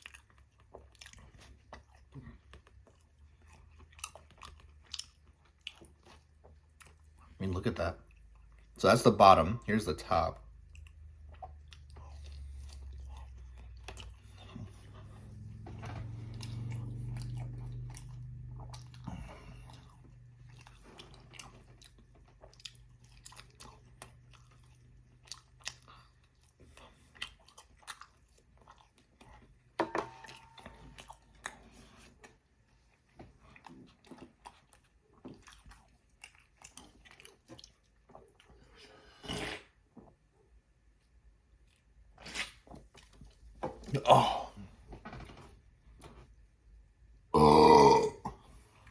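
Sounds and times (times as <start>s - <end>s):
chewing and biting fried chicken: 0.0s - 8.8s, 10.1s - 40.1s.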